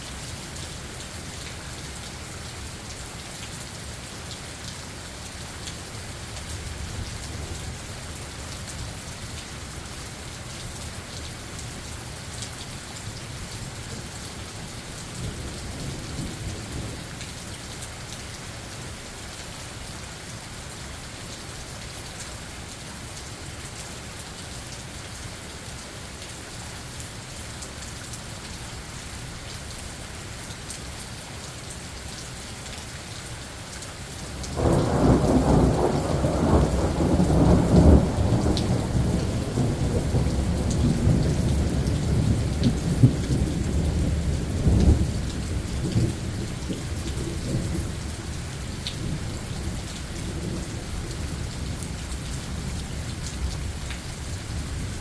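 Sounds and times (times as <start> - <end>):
steady rain: 0.0 - 55.0
thunder clap and rumble: 34.5 - 47.9.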